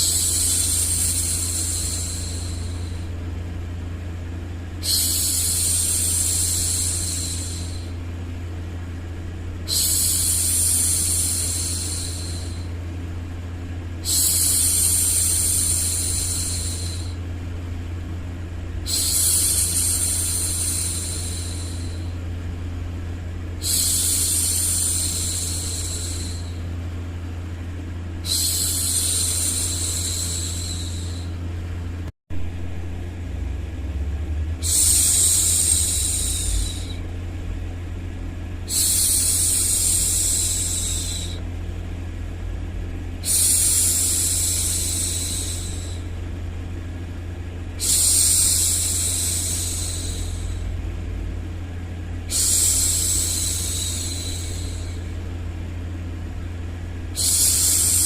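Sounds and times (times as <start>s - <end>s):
woman hushing shhh: 0.0s - 3.1s, 4.8s - 8.1s, 9.6s - 12.8s, 14.0s - 17.3s, 18.8s - 22.2s, 23.6s - 26.8s, 28.2s - 31.4s, 34.6s - 37.1s, 38.7s - 41.4s, 43.2s - 46.2s, 47.8s - 50.7s, 52.2s - 55.2s, 57.0s - 58.0s
low white-noise hum: 0.0s - 58.0s.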